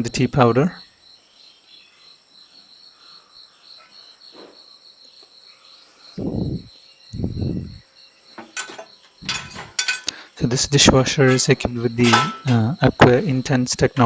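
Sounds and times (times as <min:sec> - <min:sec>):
insects chirping: 0:00.0 - 0:14.0
dull low thumps: 0:06.2 - 0:07.8
light clink: 0:08.6 - 0:10.2.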